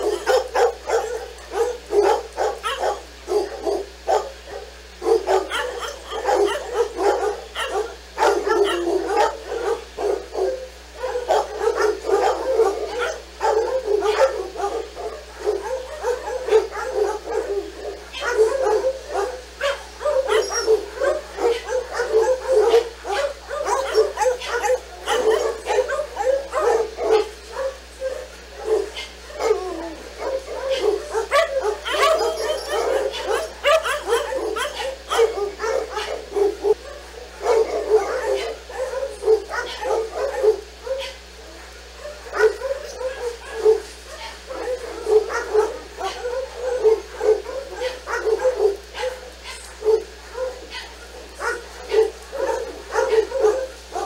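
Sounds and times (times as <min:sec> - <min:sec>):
dog barking: 0:00.0 - 0:54.0.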